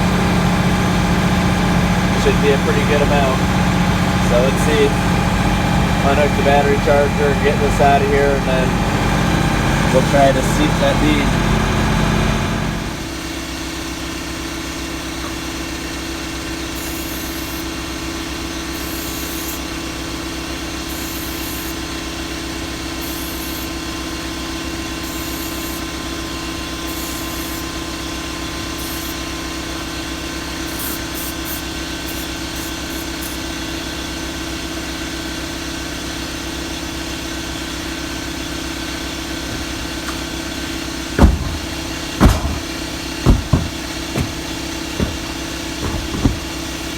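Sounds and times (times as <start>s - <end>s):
tractor diesel engine idling: 0.0s - 46.9s
sharp knocks: 41.2s - 46.7s.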